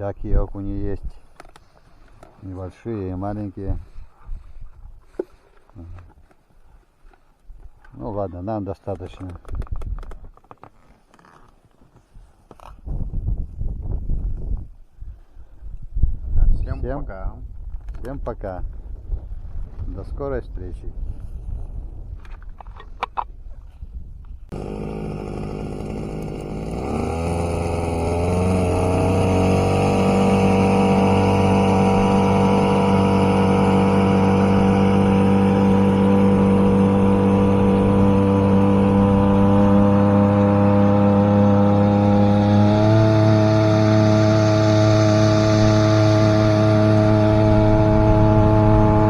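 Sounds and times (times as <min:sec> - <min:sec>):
outboard motor running: 0:24.5 - 0:49.0.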